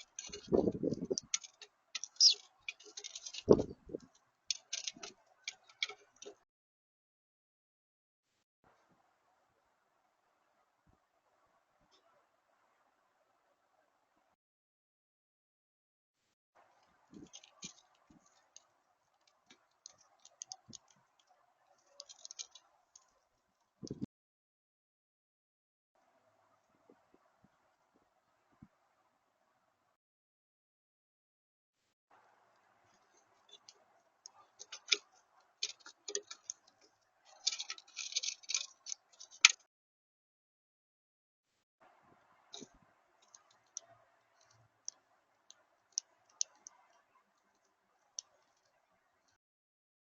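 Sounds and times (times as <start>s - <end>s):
birds pecking seeds: 0.0s - 6.4s, 16.6s - 23.8s, 32.1s - 39.6s, 42.3s - 49.4s
small clicks and ticks: 0.0s - 6.4s, 16.6s - 24.1s, 32.2s - 39.7s, 42.5s - 49.4s
high bird chirp: 2.0s - 2.5s.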